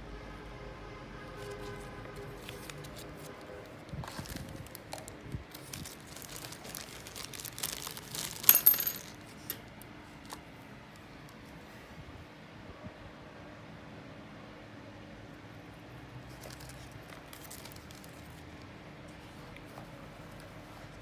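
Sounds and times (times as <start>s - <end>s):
handling clicks and rustling: 2.1s - 10.4s
small hard objects clinking: 5.6s - 9.6s.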